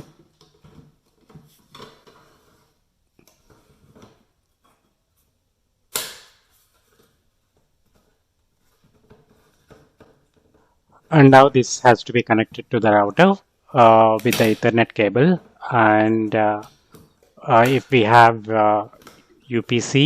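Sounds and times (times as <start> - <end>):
plastic scraping and rustling: 6.6 - 11.0.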